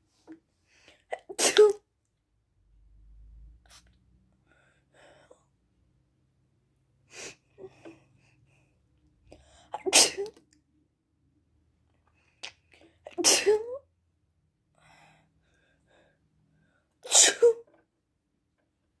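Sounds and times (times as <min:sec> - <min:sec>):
person sneezing: 0:01.1 - 0:01.8, 0:09.7 - 0:10.4, 0:13.1 - 0:13.8, 0:17.0 - 0:17.7.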